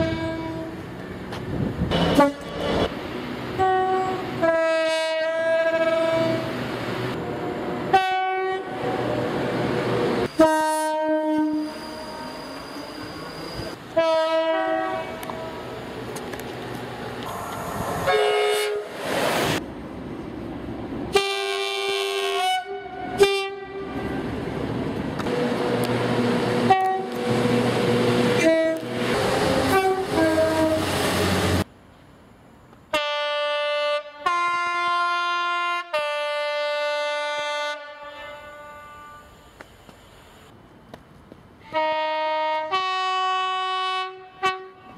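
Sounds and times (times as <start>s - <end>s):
train horn blasts: 0.0s - 0.8s, 1.9s - 2.6s, 3.6s - 6.5s, 7.9s - 9.0s, 10.3s - 12.5s, 13.9s - 15.5s, 18.1s - 18.9s, 21.1s - 24.2s, 26.6s - 27.2s, 28.4s - 28.9s, 29.6s - 30.9s, 32.9s - 39.3s, 41.7s - 44.9s
rumble of passing train: 0.0s - 33.0s.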